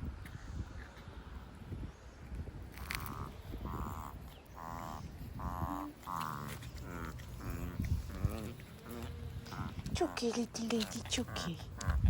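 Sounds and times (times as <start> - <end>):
small dog whining: 5.6 - 12.0.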